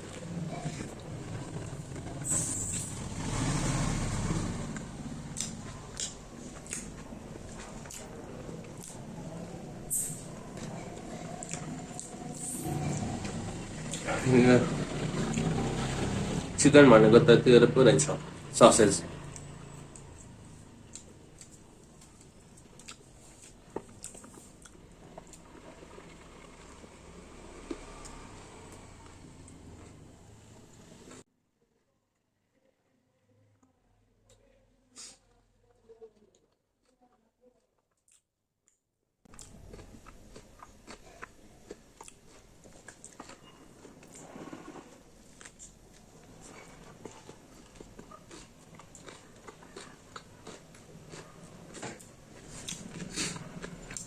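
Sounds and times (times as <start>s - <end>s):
person chewing food: 0.0s - 3.3s, 4.3s - 16.1s, 19.2s - 31.2s, 39.3s - 54.0s.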